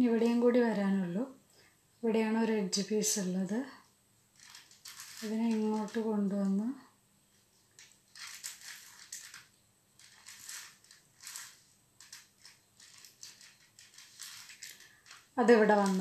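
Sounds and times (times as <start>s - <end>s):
rubik's cube turning clicks: 4.4s - 5.2s, 7.8s - 16.0s.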